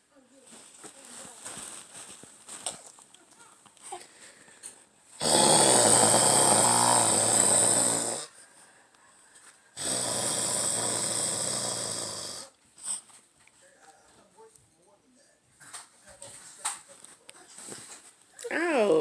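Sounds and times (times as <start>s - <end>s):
loud snores: 5.2s - 8.4s, 9.8s - 12.6s.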